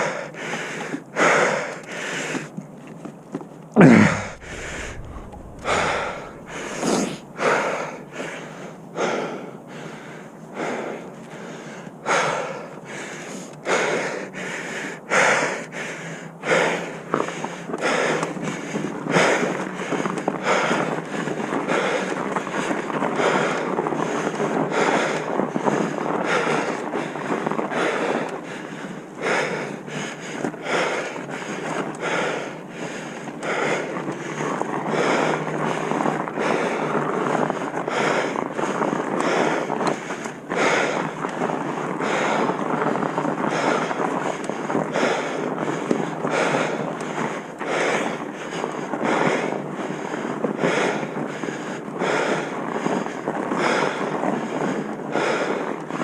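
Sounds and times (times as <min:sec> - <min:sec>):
wind buffeting microphone: 0:03.9 - 0:08.2.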